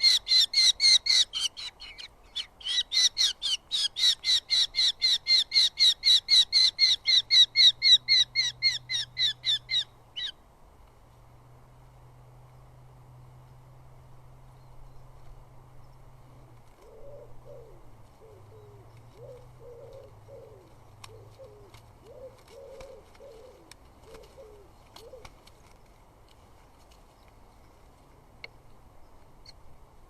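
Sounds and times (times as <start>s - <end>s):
pigeon cooing: 16.8s - 25.3s.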